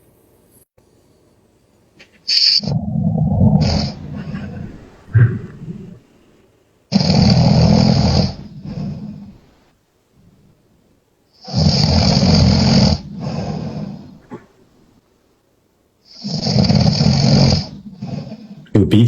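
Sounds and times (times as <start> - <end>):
soft breath sound: 2.0 - 11.5, 12.1 - 15.1, 16.0 - 18.7
person snoring: 2.3 - 6.2, 6.9 - 9.6, 11.4 - 14.2, 16.1 - 18.6.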